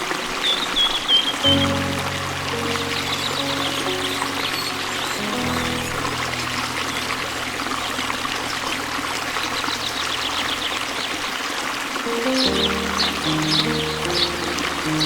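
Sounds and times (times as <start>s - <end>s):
small birds chirping: 0.0s - 8.6s, 12.1s - 15.0s
flowing water rushing: 0.0s - 15.0s.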